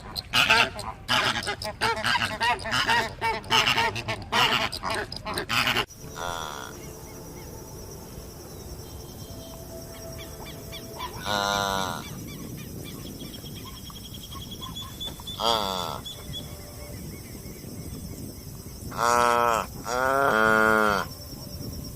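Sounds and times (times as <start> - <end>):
waterfowl honking and calling: 0.0 - 7.4, 9.9 - 16.8.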